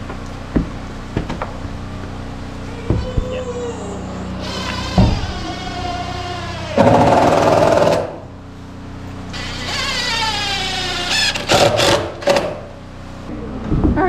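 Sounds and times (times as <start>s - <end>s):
power tool motor whirring: 4.4s - 8.1s, 9.3s - 12.8s.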